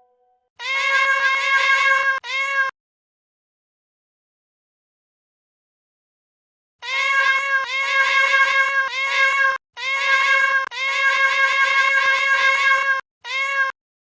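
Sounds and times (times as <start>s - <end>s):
high-pitched meow-like wail: 0.6s - 2.8s, 6.8s - 13.8s.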